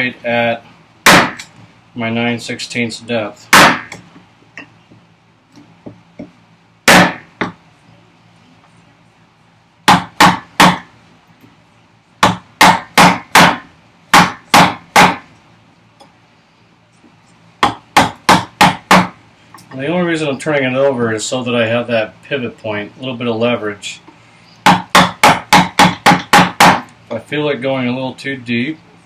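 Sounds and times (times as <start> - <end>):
chisel struck into wood: 1.0 - 1.4, 3.5 - 4.0, 6.9 - 7.6, 9.9 - 10.9, 12.2 - 15.3, 17.6 - 19.2, 24.6 - 26.9.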